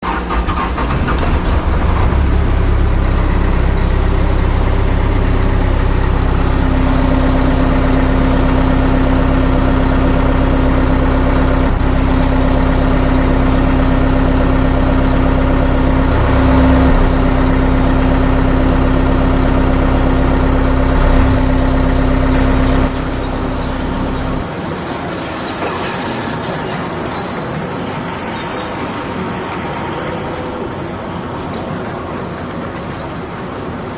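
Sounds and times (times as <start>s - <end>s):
heavy vehicle engine running: 0.0s - 24.5s.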